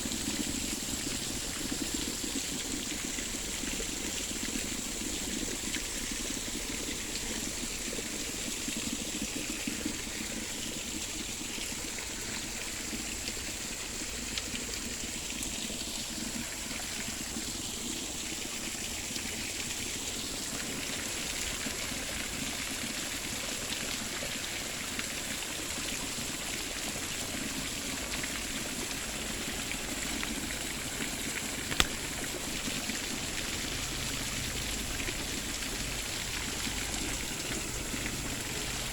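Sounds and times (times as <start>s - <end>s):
water running: 0.0s - 38.9s
sharp click: 31.7s - 32.0s.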